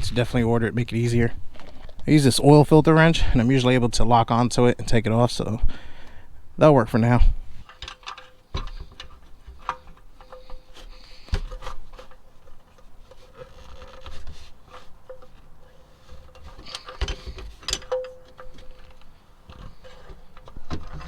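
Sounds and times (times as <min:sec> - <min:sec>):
wrench clicking and scraping metal: 0:07.6 - 0:21.0.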